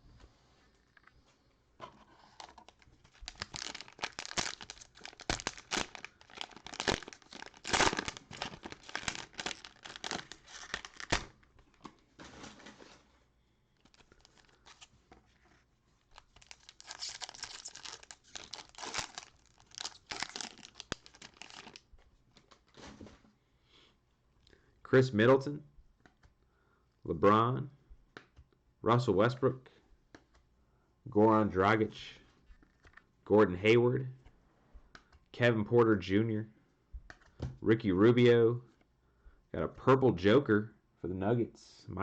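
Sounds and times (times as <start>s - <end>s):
cellophane wrapper crinkling: 2.1s - 11.9s, 13.8s - 22.8s.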